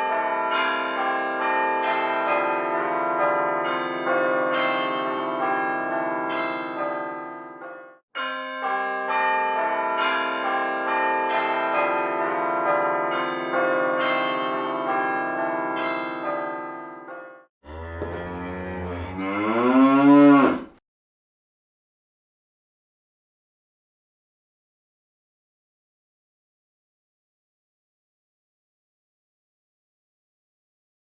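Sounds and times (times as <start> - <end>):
church bells pealing: 0.1 - 7.3, 8.2 - 16.7.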